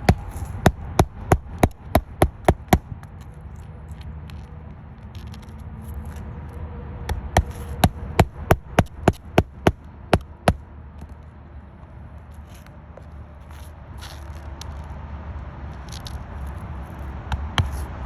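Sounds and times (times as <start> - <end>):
hammer striking nails: 0.0 - 2.9, 7.1 - 10.6.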